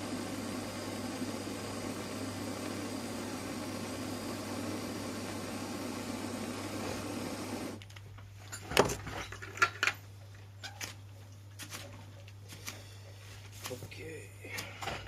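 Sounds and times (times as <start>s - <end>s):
steady noisy running sound: 0.0s - 7.8s.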